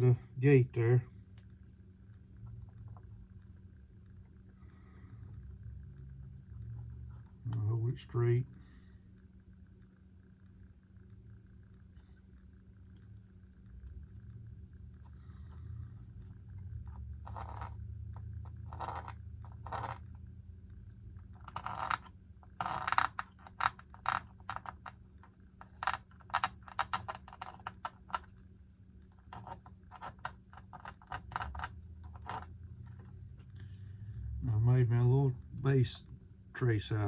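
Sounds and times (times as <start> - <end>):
steady low hum: 0.0 - 37.0
tracing tool scratching plastic: 17.2 - 17.8, 18.4 - 20.0, 21.4 - 25.0, 25.6 - 28.3, 29.2 - 32.5.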